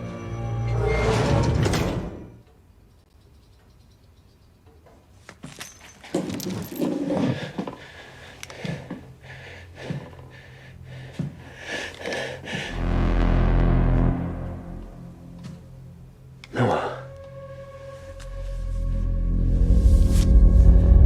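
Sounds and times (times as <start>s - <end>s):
metallic clinks and rattles: 5.4s - 7.2s.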